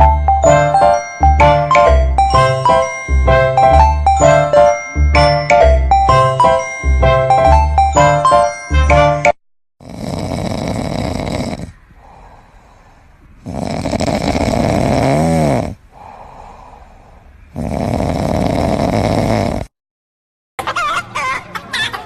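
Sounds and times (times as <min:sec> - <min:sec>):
pet snoring: 0:09.8 - 0:12.2, 0:13.4 - 0:15.8, 0:17.5 - 0:19.8
quiet breaths: 0:10.0 - 0:19.0.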